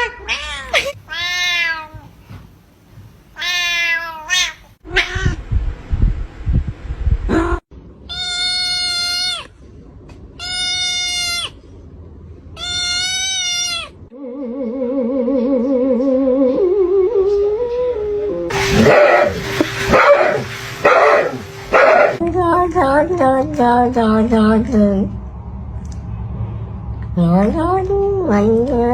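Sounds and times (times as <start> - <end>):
cat meowing: 0.0 - 2.1, 3.4 - 5.4, 8.1 - 9.5, 10.4 - 11.6, 12.6 - 14.0.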